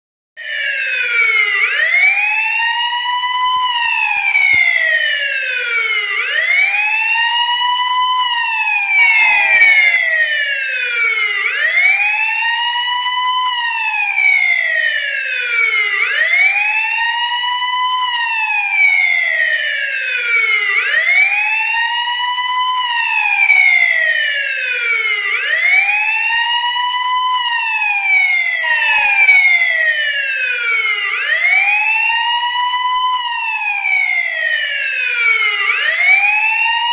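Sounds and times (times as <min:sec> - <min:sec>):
police siren wailing: 0:00.4 - 0:36.9.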